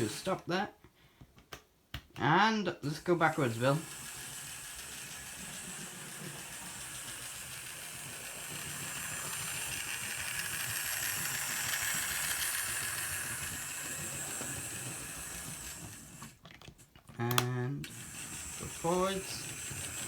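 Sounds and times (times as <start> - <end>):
electric motor whir: 3.2 - 16.4, 17.2 - 20.0.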